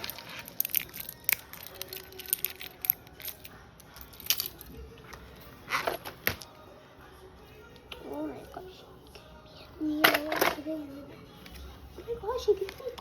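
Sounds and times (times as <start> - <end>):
plastic packaging rustling: 0.0 - 4.6.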